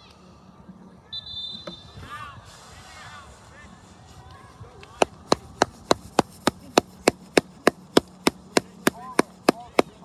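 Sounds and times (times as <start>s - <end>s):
sharp knocks: 5.0s - 9.9s.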